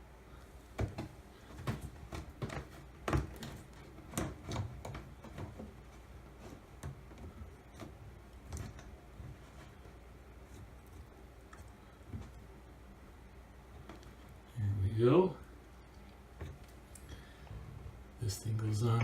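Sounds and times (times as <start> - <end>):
drain parts clicking and knocking: 0.8 - 9.0.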